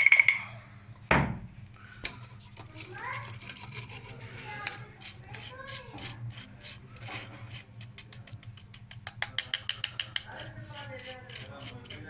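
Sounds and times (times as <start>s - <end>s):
powder scraping through strainer: 2.2s - 8.0s.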